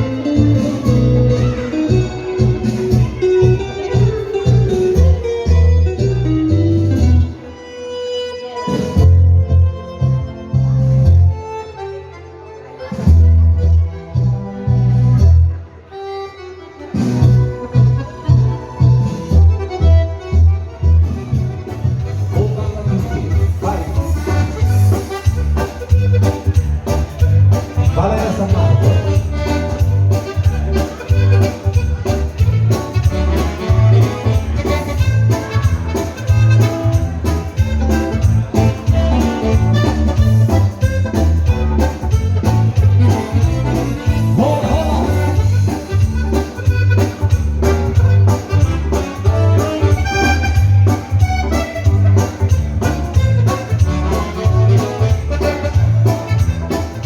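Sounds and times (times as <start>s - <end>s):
accordion dance music: 0.0s - 57.0s
steady bass beat: 21.1s - 57.0s.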